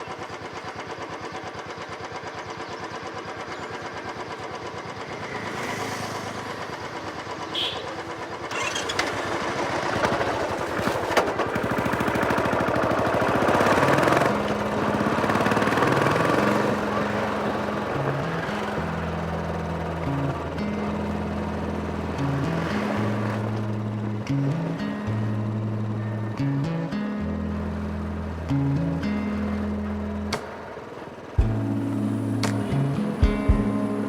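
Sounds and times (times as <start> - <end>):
motorcycle engine idling and revving: 0.0 - 34.0
music: 18.1 - 30.4, 31.4 - 34.0.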